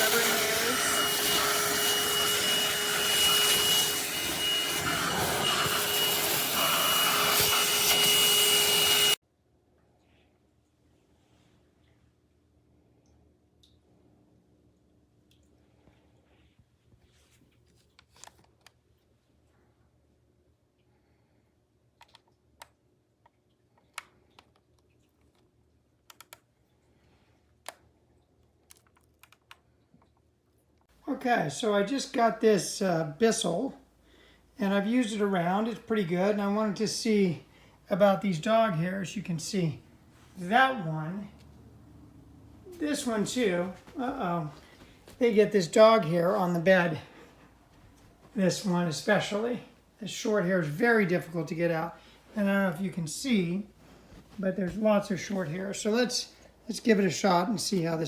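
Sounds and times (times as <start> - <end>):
hand vacuum whining: 0.0 - 9.2.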